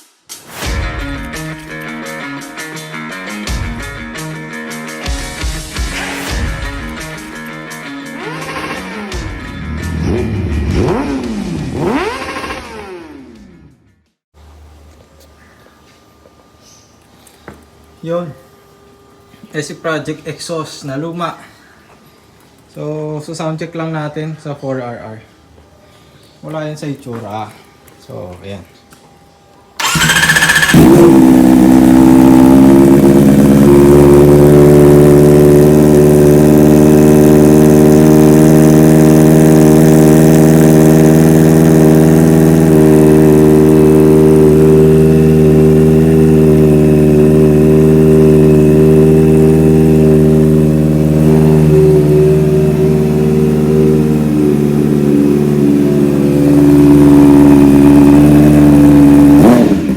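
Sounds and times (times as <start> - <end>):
motorcycle engine idling: 29.8 - 59.9.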